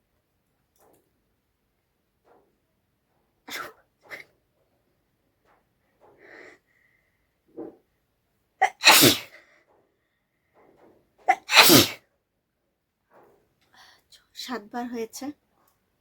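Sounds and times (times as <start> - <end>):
person sneezing: 3.5 - 4.3, 8.6 - 9.4, 11.3 - 12.0
faint breaths: 5.8 - 8.0, 13.6 - 14.3.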